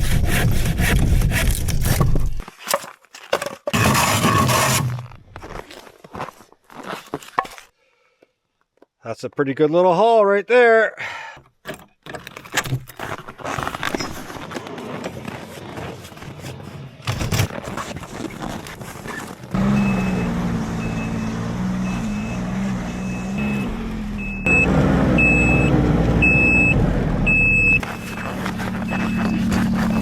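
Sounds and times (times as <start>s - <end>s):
snowmobile engine running: 19.5s - 30.0s
short electronic beeps: 19.6s - 28.2s, 28.9s - 30.0s.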